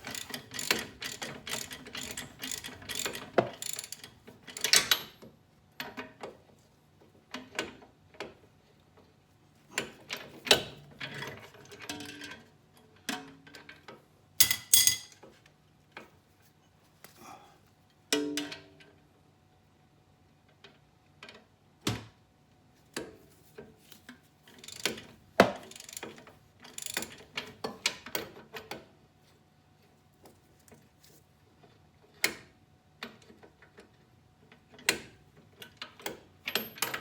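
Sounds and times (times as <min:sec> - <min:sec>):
metal tools clinking: 0:14.4 - 0:15.2.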